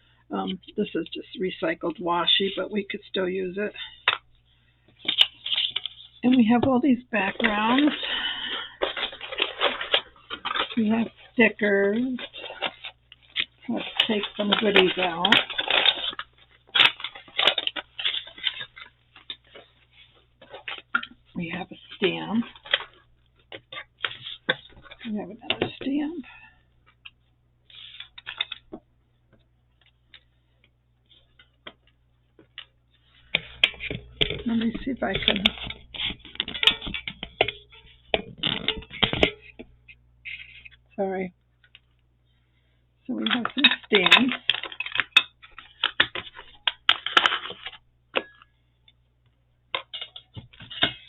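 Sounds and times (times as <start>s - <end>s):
packaging rustling: 5.0s - 6.2s, 7.3s - 25.9s, 26.8s - 28.8s.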